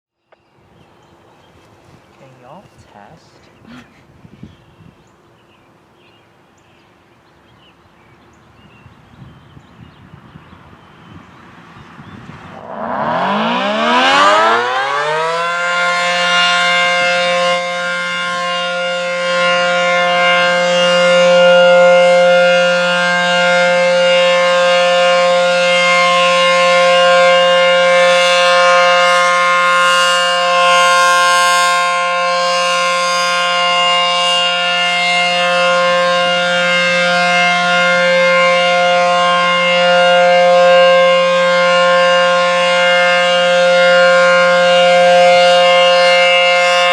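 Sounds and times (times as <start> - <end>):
warning siren winding up: 12.5 - 46.9.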